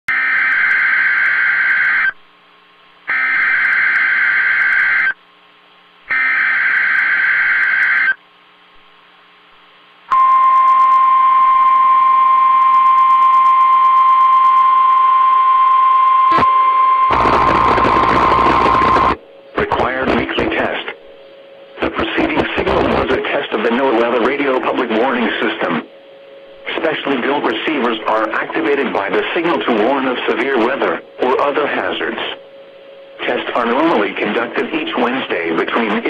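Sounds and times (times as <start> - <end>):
steady warning alarm tone: 0.1 - 2.2, 3.1 - 5.2, 6.1 - 8.2, 10.1 - 36.0
screechy digital data bursts: 17.1 - 21.0.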